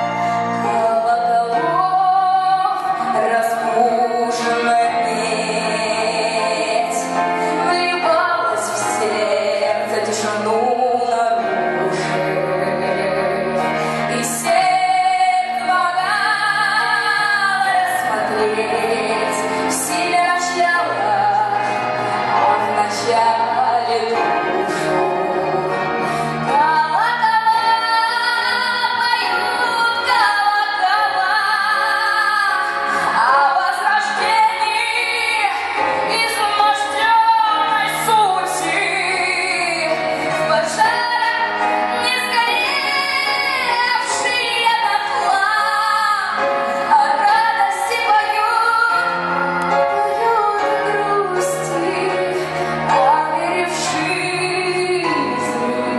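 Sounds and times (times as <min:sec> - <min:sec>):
instrumental backing: 0:00.0 - 0:55.9
woman singing with vibrato: 0:00.0 - 0:55.9.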